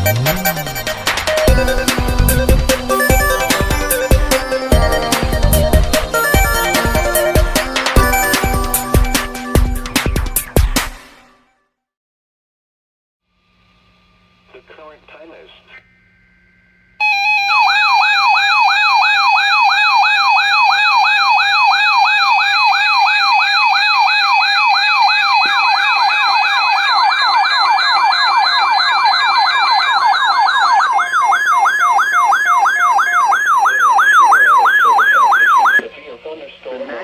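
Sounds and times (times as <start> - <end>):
steady beeping tone: 0.0 - 10.8, 17.0 - 35.8
electronic alert siren: 0.0 - 11.1, 17.0 - 35.8
second sweeping siren: 0.0 - 11.1, 17.0 - 35.8.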